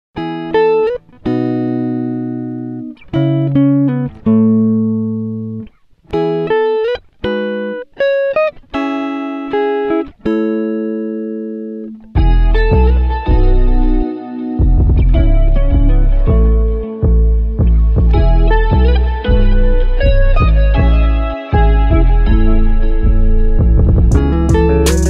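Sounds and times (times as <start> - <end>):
plucked guitar chords: 0.2 - 25.0
low bass: 12.2 - 14.0, 14.6 - 25.0.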